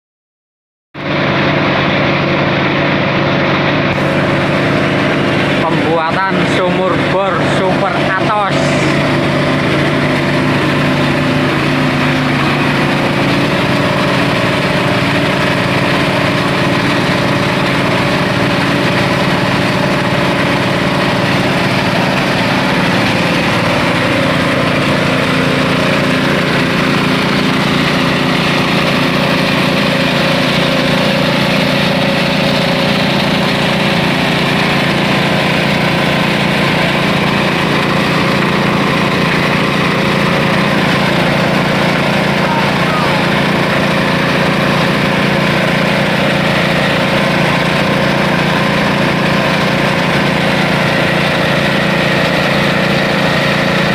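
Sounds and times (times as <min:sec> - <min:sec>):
small engine running steadily: 0:01.0 - 0:53.9.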